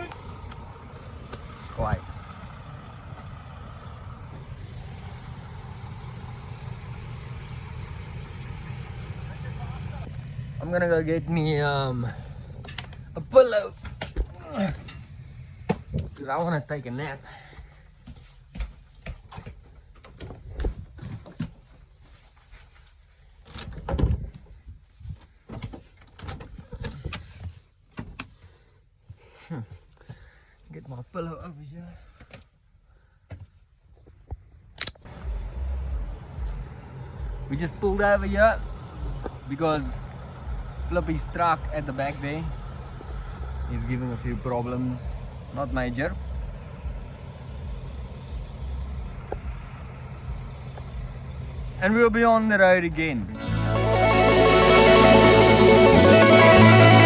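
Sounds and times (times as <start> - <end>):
vehicle engine idling: 0.0 - 18.4, 35.1 - 57.0.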